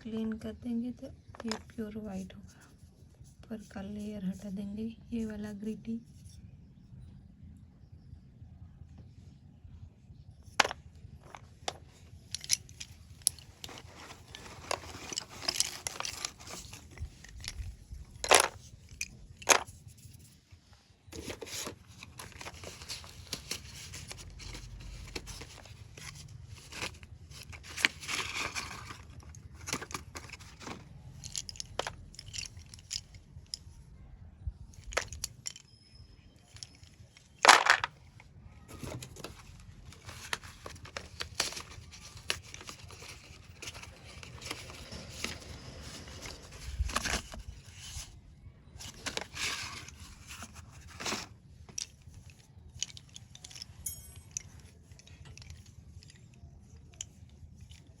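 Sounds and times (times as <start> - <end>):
slate pencils clicking and snapping: 11.7 - 20.2, 21.2 - 33.6, 39.0 - 48.0, 48.8 - 58.0
gritty scraping of slate pencils: 11.7 - 20.4.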